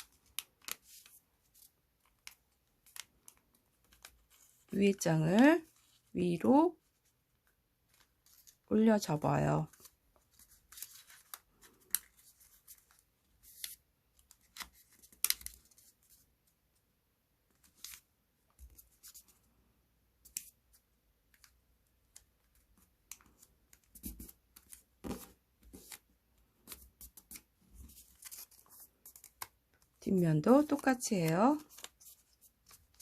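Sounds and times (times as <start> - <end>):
paper rustling: 6.8 - 8.7, 9.7 - 16.3, 20.3 - 33.0.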